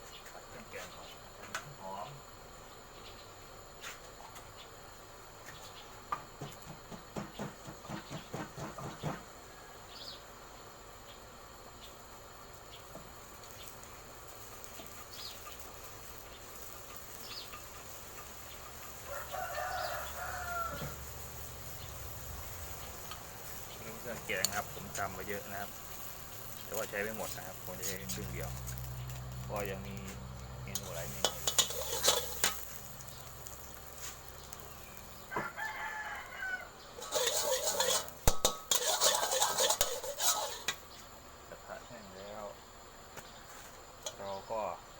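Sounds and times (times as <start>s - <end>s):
faint insect hum: 0.0s - 44.9s
spatula scraping in metal wok: 13.4s - 36.2s, 37.0s - 40.9s
rooster crowing: 18.9s - 21.5s, 34.0s - 38.1s.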